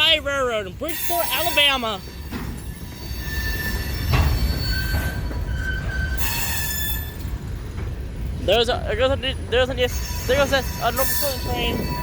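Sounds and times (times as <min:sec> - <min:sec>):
train rumbling on rails: 0:00.0 - 0:12.0
train wheels squealing: 0:00.8 - 0:07.7, 0:09.7 - 0:12.0.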